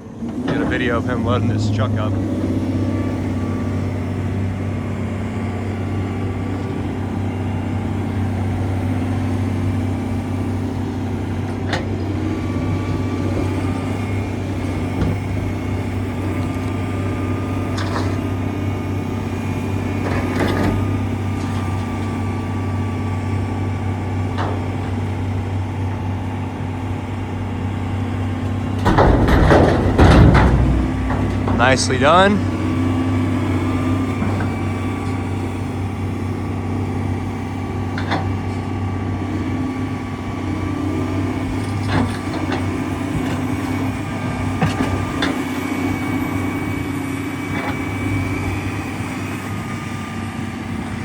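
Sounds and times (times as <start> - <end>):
excavator diesel engine running: 0.0 - 51.0
hydraulic whine: 0.0 - 51.0
bucket clanking: 28.4 - 35.3.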